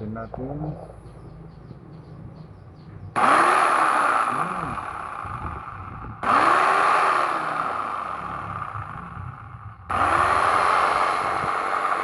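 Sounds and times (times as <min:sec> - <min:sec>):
electric jigsaw whirring: 0:03.2 - 0:12.0.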